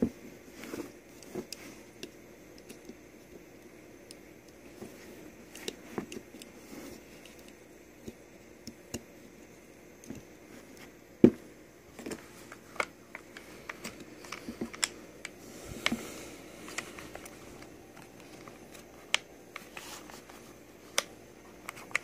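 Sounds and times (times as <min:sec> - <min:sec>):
objects being handled clicking: 0:01.1 - 0:09.1, 0:12.0 - 0:16.0.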